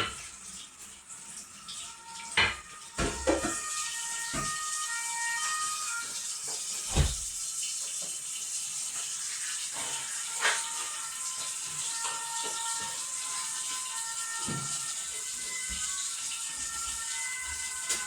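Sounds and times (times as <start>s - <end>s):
soft background music: 9.2s - 18.0s.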